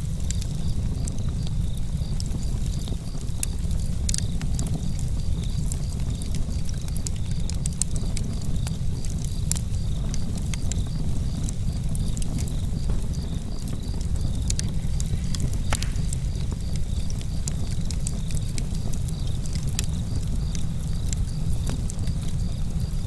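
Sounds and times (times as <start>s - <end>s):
campfire crackling and popping: 0.0s - 23.0s
crickets chirping: 0.0s - 23.0s
breeze: 11.4s - 23.0s.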